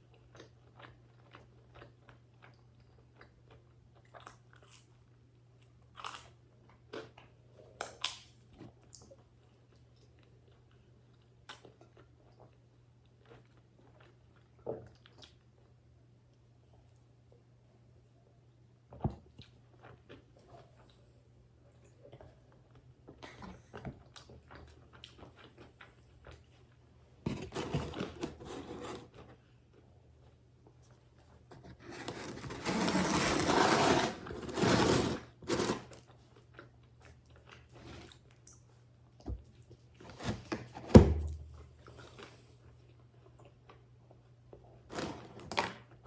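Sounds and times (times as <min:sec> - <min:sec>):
quiet chewing: 0:19.3 - 0:27.0.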